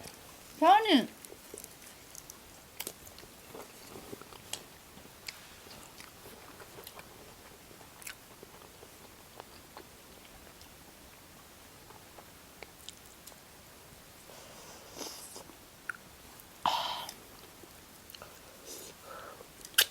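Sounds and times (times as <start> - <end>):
people chewing food: 1.2 - 19.9
mouth clicks and smacks: 19.6 - 19.9.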